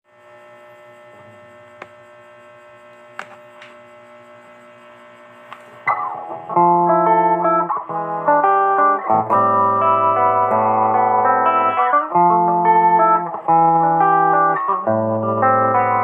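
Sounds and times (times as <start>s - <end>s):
guitar amplifier humming: 0.1s - 16.0s
electric guitar playing notes: 5.8s - 16.0s.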